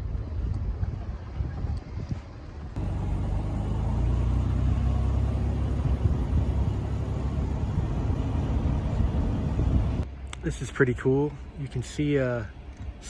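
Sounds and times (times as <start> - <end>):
car engine and road rumble: 2.2 - 13.0.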